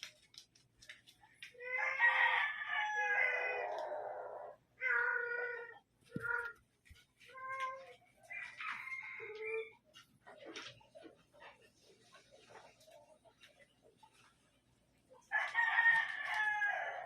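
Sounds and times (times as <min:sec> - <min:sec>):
cat meowing: 0:04.8 - 0:06.6.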